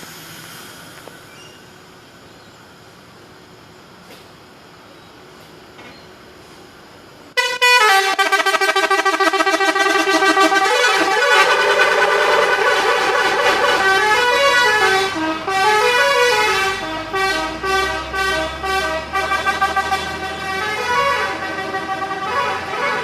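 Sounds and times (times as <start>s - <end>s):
bus musical air horn: 7.4s - 23.0s.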